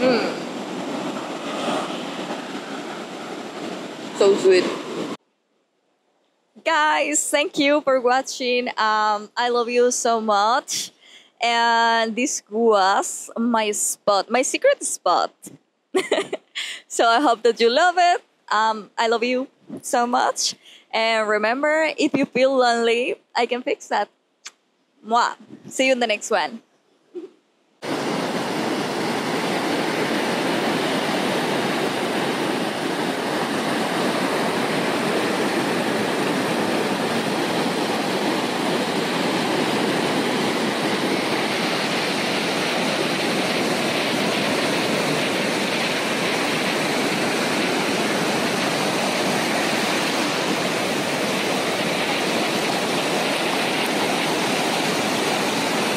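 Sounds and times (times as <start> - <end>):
rushing water hiss: 0.0 - 5.2, 27.8 - 55.9.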